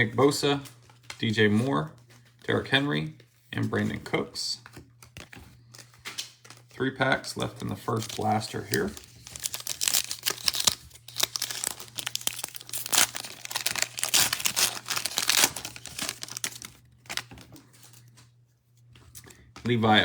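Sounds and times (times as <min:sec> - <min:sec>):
foil wrapper tearing and crinkling: 0:07.4 - 0:18.0.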